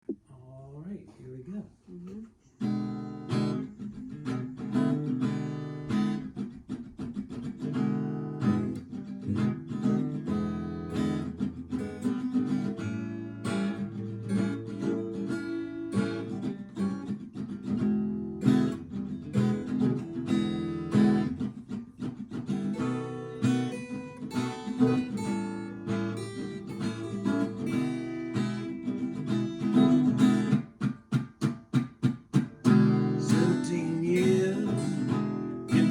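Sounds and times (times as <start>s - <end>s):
acoustic guitar strumming: 2.6s - 35.9s.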